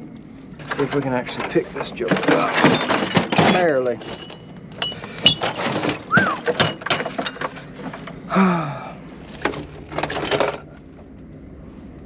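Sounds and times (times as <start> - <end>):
steel plate clanking on scrap metal: 0.6 - 8.2, 9.3 - 10.8.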